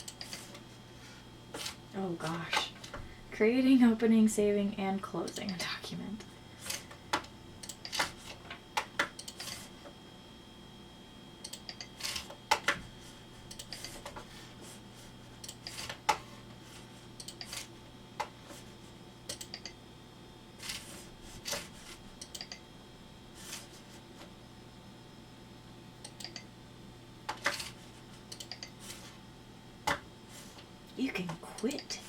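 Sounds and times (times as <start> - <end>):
computer mouse clicking: 0.0 - 0.5, 7.2 - 8.1, 8.8 - 9.6, 11.4 - 12.8, 13.5 - 14.1, 15.4 - 16.0, 17.2 - 18.3, 19.3 - 19.8, 22.2 - 22.6, 26.0 - 26.5, 28.3 - 28.8
steady low hum: 0.0 - 32.0.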